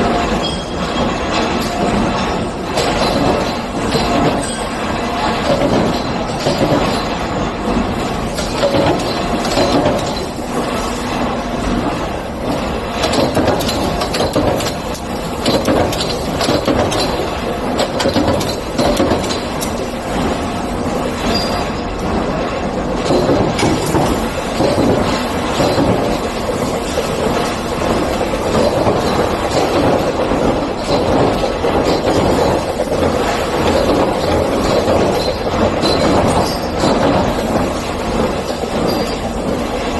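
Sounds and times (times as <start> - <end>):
rattles and knocks: 0.0 - 20.4, 21.2 - 39.9.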